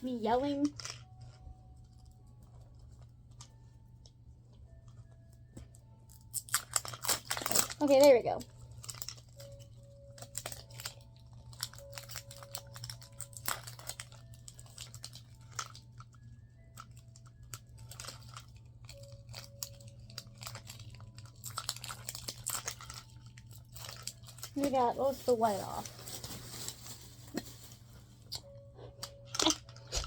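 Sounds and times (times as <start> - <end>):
plastic wrapping crinkling and tearing: 6.0 - 30.0.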